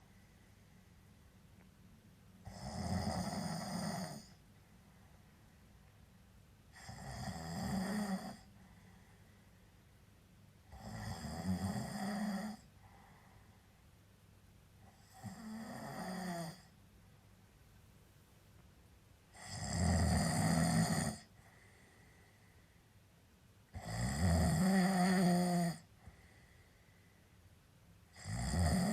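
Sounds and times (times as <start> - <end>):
quiet breathing: 0.0 - 28.9
person snoring: 2.4 - 4.4, 6.7 - 8.5, 10.7 - 13.1, 14.9 - 16.7, 19.3 - 21.5, 23.7 - 26.2, 28.1 - 28.9.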